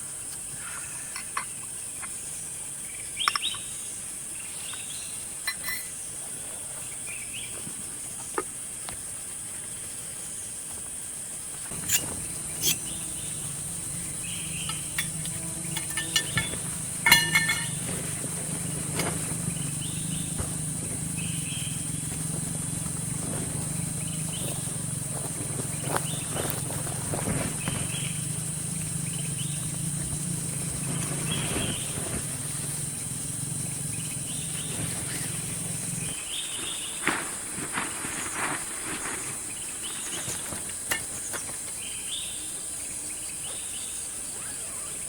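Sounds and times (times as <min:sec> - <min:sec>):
insect chorus buzzing: 0:00.0 - 0:45.0
low steady hum: 0:11.7 - 0:36.2
sharp clicks and knocks: 0:14.6 - 0:18.2.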